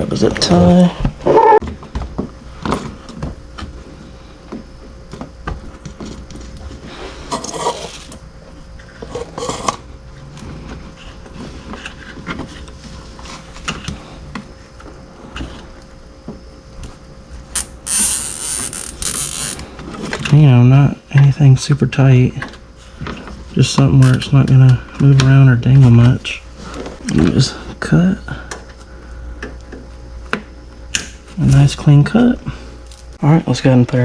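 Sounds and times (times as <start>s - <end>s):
faint steady hum: 0.0s - 34.0s
rustling scrapes: 6.8s - 8.1s.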